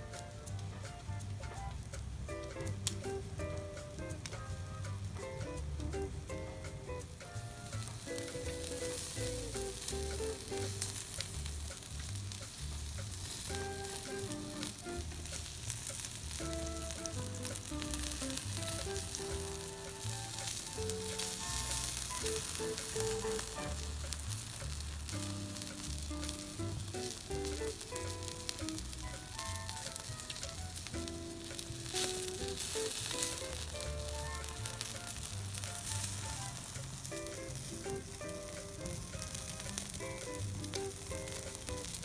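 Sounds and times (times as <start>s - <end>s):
background music with bass line: 0.0s - 42.0s
food sizzling: 0.0s - 42.0s.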